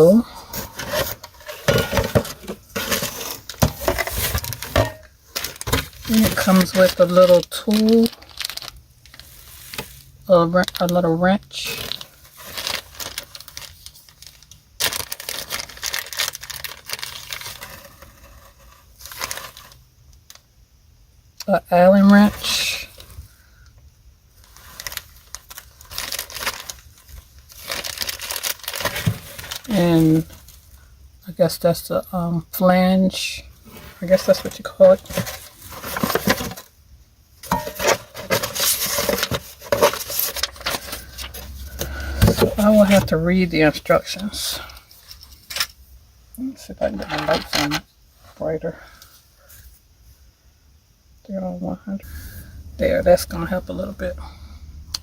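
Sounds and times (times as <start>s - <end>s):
packaging crinkling: 0.4s - 11.0s, 11.6s - 20.4s, 24.4s - 30.7s, 33.6s - 36.7s, 37.4s - 43.2s.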